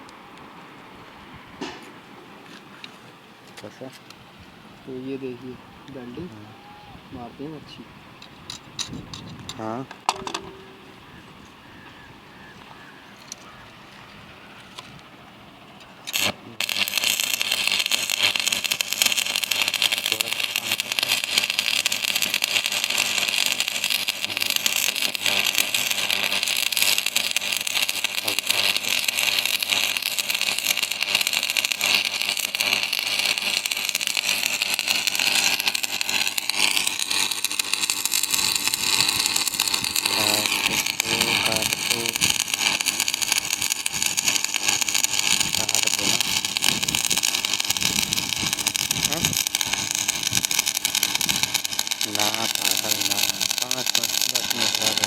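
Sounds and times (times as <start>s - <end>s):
welding arc striking crack: 9.5s - 11.0s, 16.1s - 55.0s
welding arc crackling sizzle: 15.9s - 55.0s.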